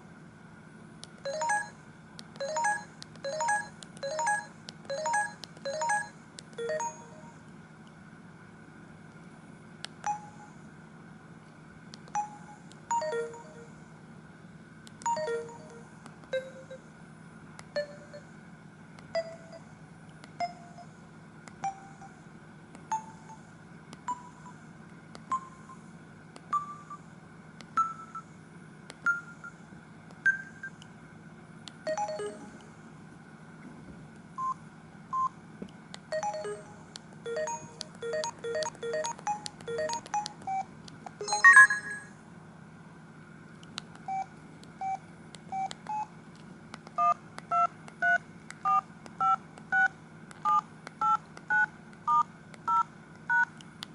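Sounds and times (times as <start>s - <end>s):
electronic ringtone beeps: 1.3s - 1.8s, 2.4s - 7.4s, 10.0s - 10.6s, 12.2s - 13.8s, 15.1s - 16.8s, 17.8s - 18.3s, 19.2s - 19.7s, 21.6s - 22.2s, 22.9s - 23.5s, 26.5s - 27.1s, 27.8s - 28.3s, 30.2s - 30.8s, 31.9s - 32.6s, 36.1s - 42.2s, 47.0s - 49.9s.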